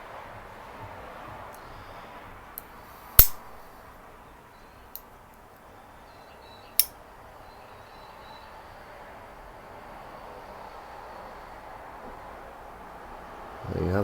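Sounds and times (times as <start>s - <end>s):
metal tool blades clicking: 3.2s - 3.5s.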